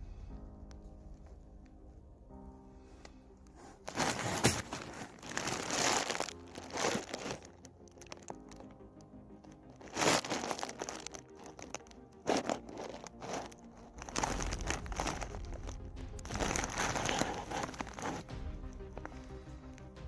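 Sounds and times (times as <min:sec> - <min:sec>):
background music: 0:00.0 - 0:20.0
crinkling rustles: 0:03.6 - 0:08.8, 0:09.4 - 0:19.9.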